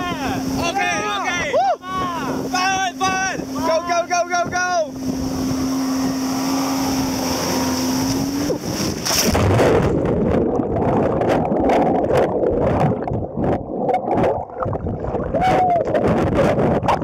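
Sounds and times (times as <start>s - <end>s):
motorboat engine drone: 0.0s - 13.6s
churning gurgling water: 0.0s - 17.0s
wind buffeting microphone: 0.0s - 17.0s
splash into water: 6.6s - 10.0s.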